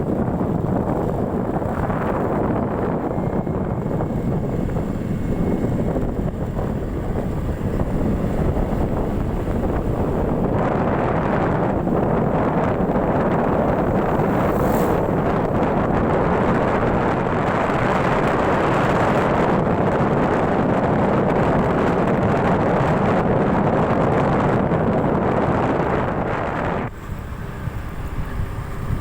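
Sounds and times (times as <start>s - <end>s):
road and engine noise: 0.0s - 29.0s
wind rushing over microphone: 0.0s - 29.0s.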